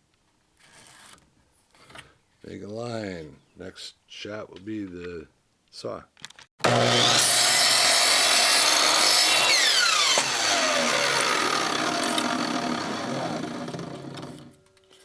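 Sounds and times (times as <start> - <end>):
power saw whine: 6.6 - 14.6
saw cutting wood: 6.6 - 14.6.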